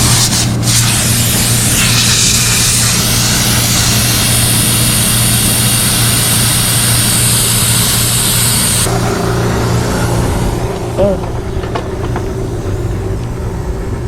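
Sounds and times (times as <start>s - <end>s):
air hissing from hose: 0.0s - 8.9s
air compressor humming: 0.0s - 14.0s.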